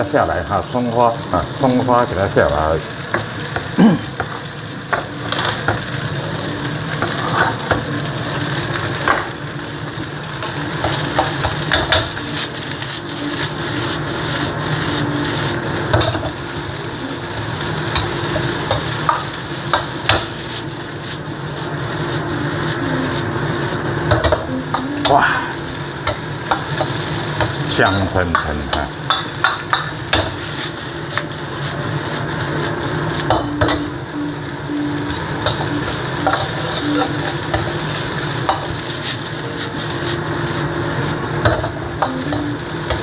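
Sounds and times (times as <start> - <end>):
fried rice sizzling in a wok: 0.0 - 43.0.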